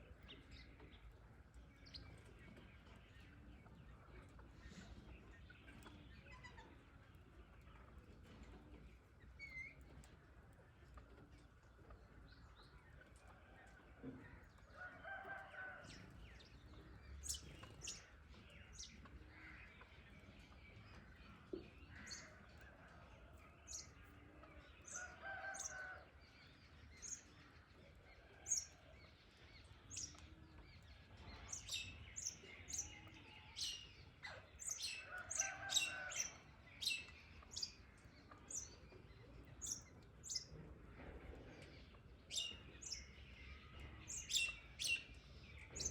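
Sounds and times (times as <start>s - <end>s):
birds chirping: 29.6s - 40.6s, 41.5s - 45.9s.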